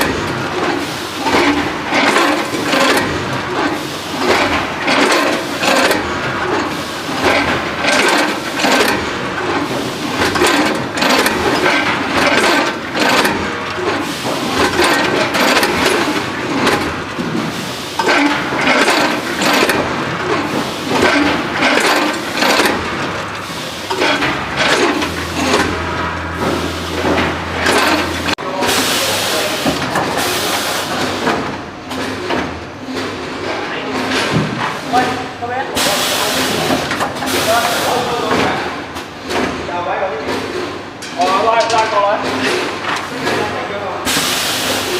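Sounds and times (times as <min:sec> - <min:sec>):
packaging machine clattering: 0:00.0 - 0:28.4.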